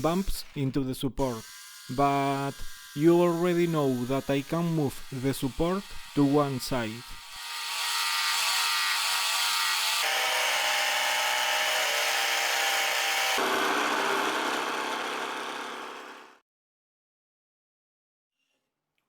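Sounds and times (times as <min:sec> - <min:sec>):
jigsaw cutting wood: 0:01.2 - 0:16.4.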